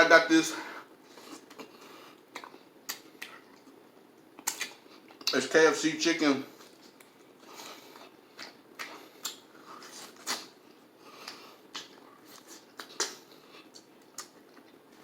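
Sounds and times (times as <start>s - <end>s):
chewing crunches: 4.4s - 5.3s, 6.6s - 10.6s, 11.2s - 15.0s.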